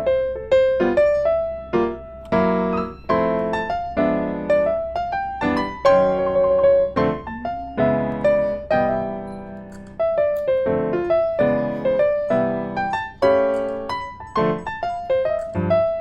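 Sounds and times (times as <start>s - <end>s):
piano melody over chords: 0.0s - 16.0s.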